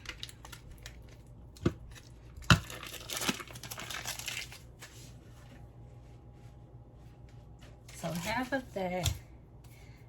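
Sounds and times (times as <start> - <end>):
wrapper crinkling and rustling: 0.0 - 4.9.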